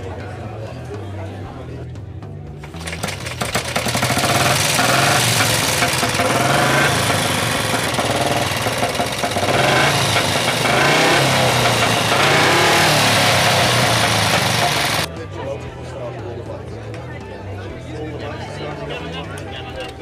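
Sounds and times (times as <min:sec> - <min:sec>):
motorcycle engine revving: 0:02.6 - 0:15.1.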